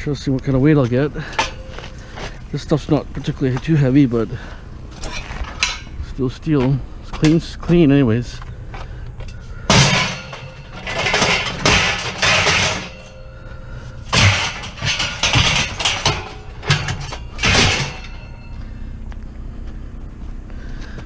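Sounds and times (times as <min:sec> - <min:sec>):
steel scrap clanking and scraping: 0:00.9 - 0:03.3, 0:04.4 - 0:07.6, 0:09.2 - 0:18.8.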